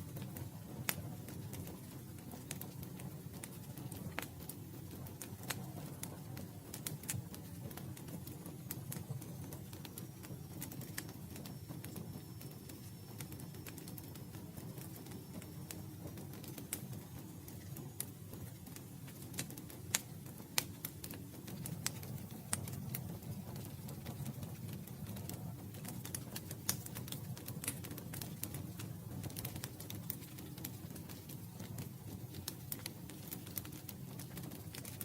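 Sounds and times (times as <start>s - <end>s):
low rumble of flames: 0.0s - 35.0s
burning wood popping and snapping: 0.2s - 9.0s, 16.1s - 35.0s.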